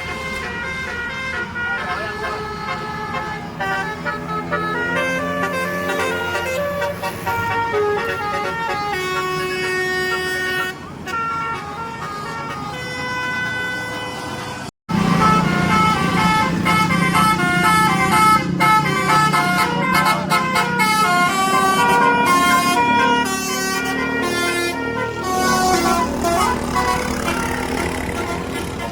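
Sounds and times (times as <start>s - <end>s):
multi-tone air horn melody: 0.0s - 28.9s
low engine rumble: 14.9s - 28.9s.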